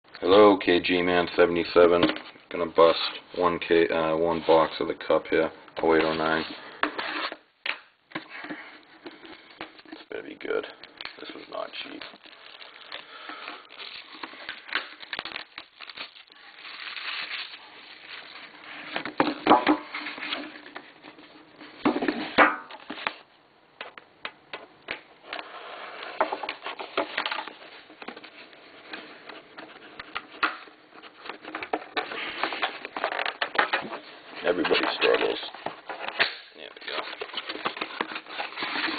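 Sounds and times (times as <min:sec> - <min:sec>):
packaging scrapes: 0:06.0 - 0:07.4, 0:08.3 - 0:23.1, 0:25.4 - 0:30.0, 0:31.0 - 0:38.9
plastic packaging rustling: 0:08.5 - 0:21.8, 0:26.2 - 0:38.9.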